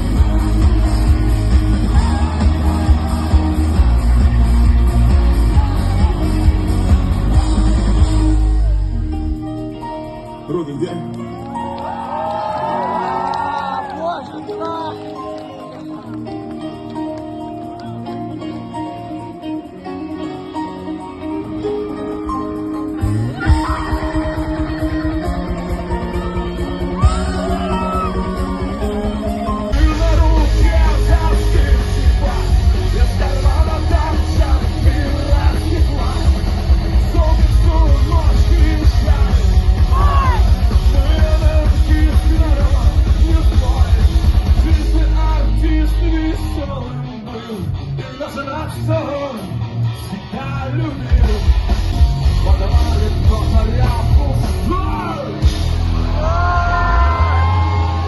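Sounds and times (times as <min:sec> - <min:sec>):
heavy drums: 0:00.0 - 0:09.4, 0:23.0 - 0:46.7, 0:51.0 - 0:58.0
bass guitar: 0:00.0 - 0:58.0
punk rock band playing: 0:00.0 - 0:58.0
person shouting singing: 0:23.3 - 0:36.3, 0:37.0 - 0:43.9
shouted vocals: 0:39.8 - 0:40.6, 0:56.1 - 0:58.0.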